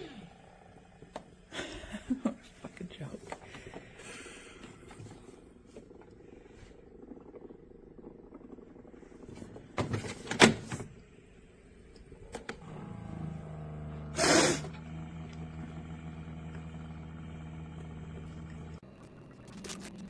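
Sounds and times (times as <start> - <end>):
coffee maker gurgling: 0.0 - 20.0
steady low hum: 0.0 - 20.0
coffee maker hissing spurt: 14.1 - 14.8.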